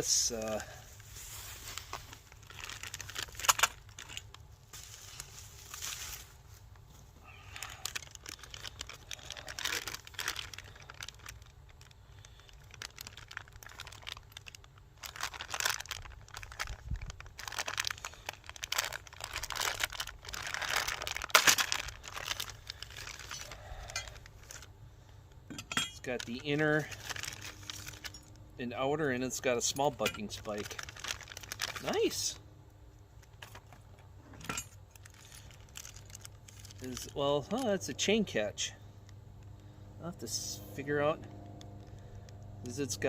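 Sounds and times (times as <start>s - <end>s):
packaging crinkling and tearing: 0.5s - 6.4s, 7.4s - 24.7s, 26.1s - 28.4s, 29.5s - 32.4s, 34.9s - 38.0s.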